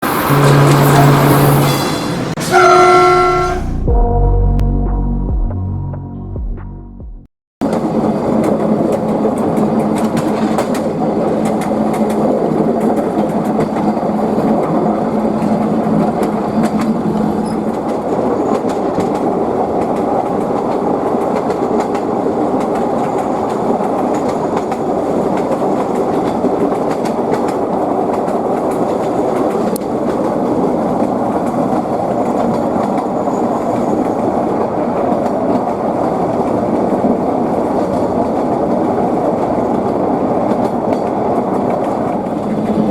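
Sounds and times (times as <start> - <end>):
diesel train running: 0.0 - 7.0
low hum: 3.2 - 7.3
wheels clacking over rail joints: 7.6 - 42.9.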